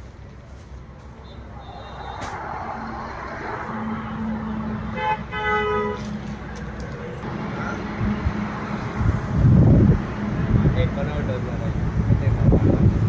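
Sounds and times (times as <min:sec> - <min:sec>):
engine humming: 0:00.0 - 0:13.0
vehicle horn tooting: 0:01.2 - 0:02.4, 0:04.9 - 0:06.2.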